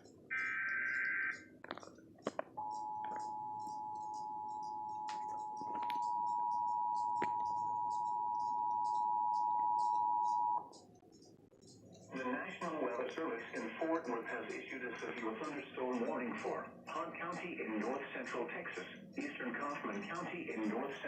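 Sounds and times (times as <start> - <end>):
two-tone attention signal: 0.3 - 1.5, 2.6 - 10.7.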